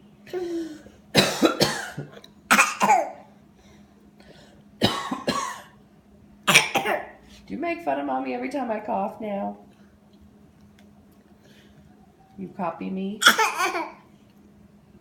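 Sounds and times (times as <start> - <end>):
child coughing: 0.3 - 3.3, 4.8 - 5.8, 6.5 - 7.2, 13.2 - 14.0
woman coughing: 0.4 - 3.3, 4.8 - 5.8, 6.5 - 7.2, 13.2 - 14.0.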